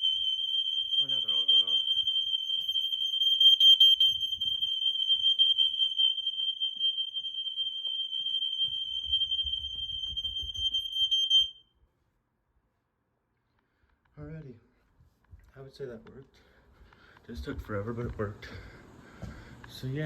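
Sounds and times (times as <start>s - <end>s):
smoke alarms shrieking: 0.0s - 11.6s.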